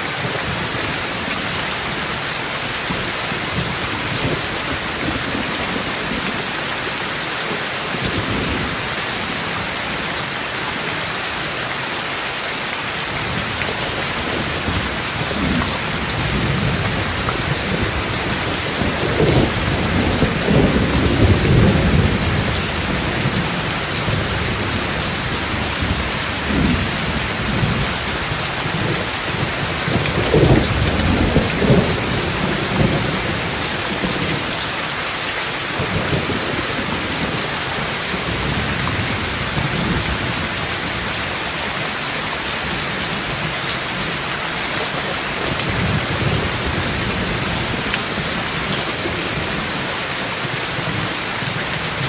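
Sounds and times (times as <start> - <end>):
heavy rain hissing: 0.0 - 52.0
rolling thunder rumbling: 13.3 - 34.5.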